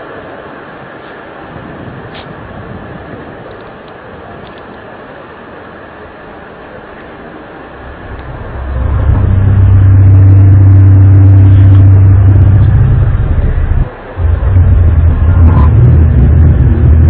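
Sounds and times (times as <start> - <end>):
low droning hum: 5.8 - 17.0.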